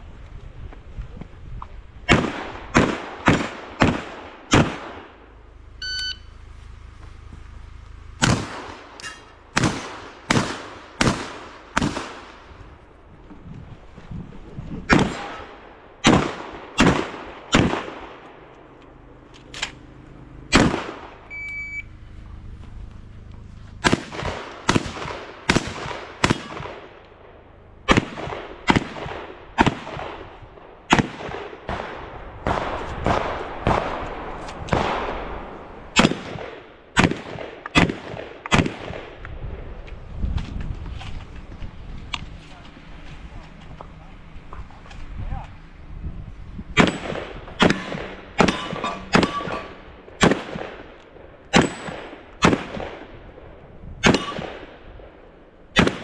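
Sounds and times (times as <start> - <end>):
shotgun shots: 2.1 - 5.3, 8.2 - 12.6, 14.9 - 18.3, 20.5 - 21.3, 23.8 - 27.0, 27.9 - 39.2, 46.8 - 53.2, 54.0 - 56.0
shot timer beep: 5.8 - 6.4, 21.3 - 21.9.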